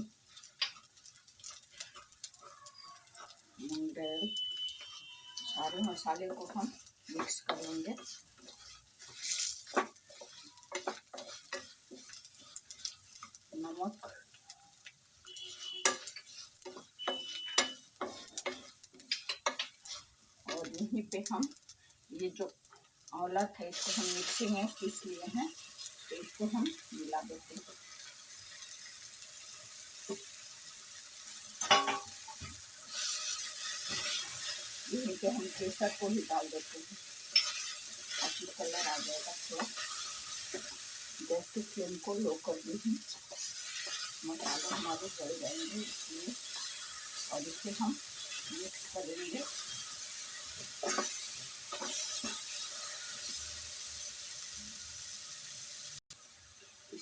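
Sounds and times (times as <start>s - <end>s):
spices sizzling in a pan: 0.0s - 57.0s
utensil clanking against pan: 6.3s - 13.4s, 15.3s - 20.8s, 31.6s - 32.5s, 37.3s - 40.8s.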